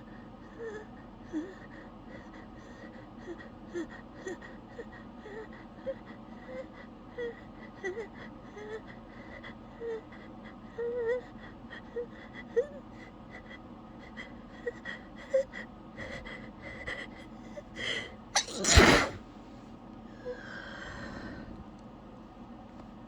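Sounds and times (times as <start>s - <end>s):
person sneezing: 18.4s - 19.2s
person sniffing: 18.4s - 19.2s.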